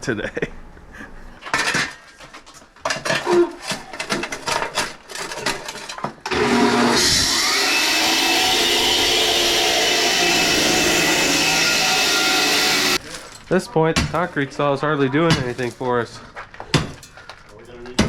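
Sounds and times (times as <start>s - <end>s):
concrete saw running: 6.3s - 13.0s.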